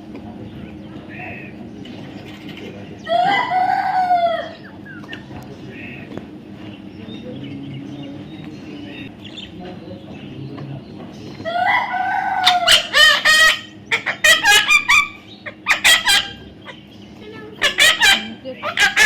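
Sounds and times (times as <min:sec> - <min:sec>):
parrot squawking: 0:11.4 - 0:16.9, 0:17.5 - 0:19.0.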